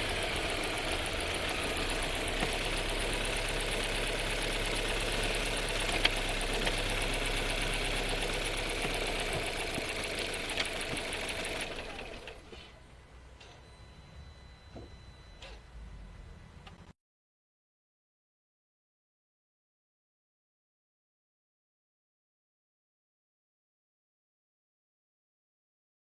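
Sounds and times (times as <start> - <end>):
car engine running rattly: 0.0 - 12.9
sharp clicks: 1.6 - 12.4.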